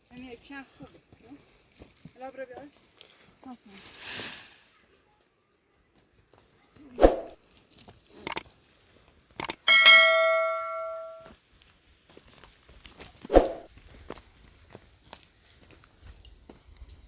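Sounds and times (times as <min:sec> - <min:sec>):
metal object ringing when struck: 0:09.6 - 0:11.2.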